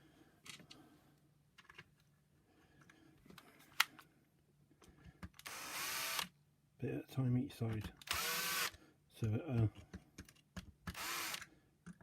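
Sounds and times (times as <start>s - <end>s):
light clicks and taps of parts: 9.5s - 11.0s.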